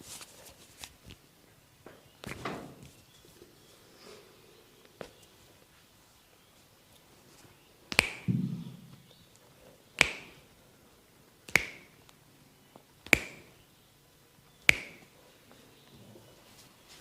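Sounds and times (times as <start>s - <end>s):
sharp percussive massage strikes: 8.0s - 9.1s.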